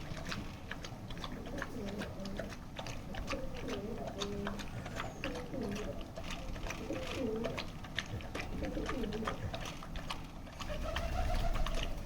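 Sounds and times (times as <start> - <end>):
dog chewing and licking: 0.0 - 12.0
low cooing call: 8.6 - 9.5.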